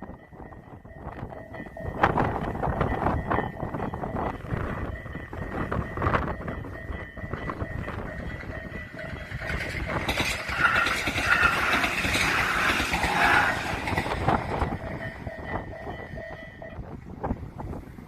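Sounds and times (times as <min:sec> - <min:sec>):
train passing: 0:00.0 - 0:17.9.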